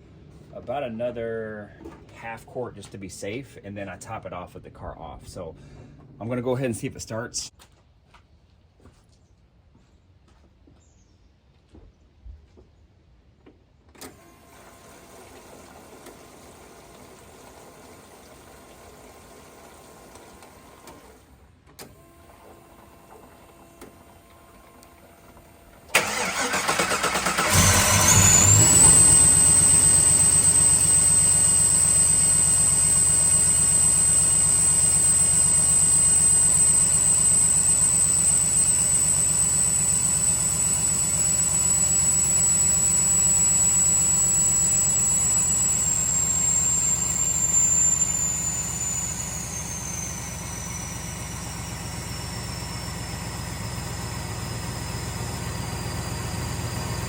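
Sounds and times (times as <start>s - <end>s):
engine cranking and starting: 25.8s - 57.0s
engine fast idle: 25.9s - 57.0s
high steady whine: 27.3s - 57.0s.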